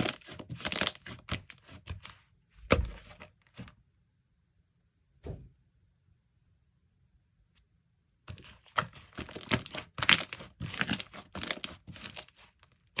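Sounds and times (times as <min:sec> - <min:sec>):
slime squishing by hand: 0:00.0 - 0:03.6, 0:08.3 - 0:13.0.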